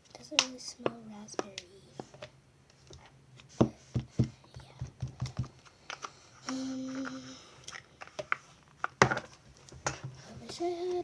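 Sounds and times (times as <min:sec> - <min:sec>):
person humming a note: 0:06.5 - 0:07.4.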